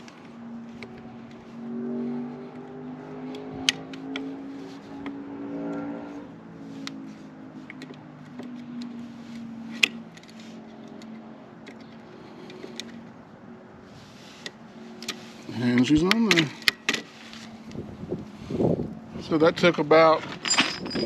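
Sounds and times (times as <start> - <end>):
vehicle engine humming: 0.0 - 21.0.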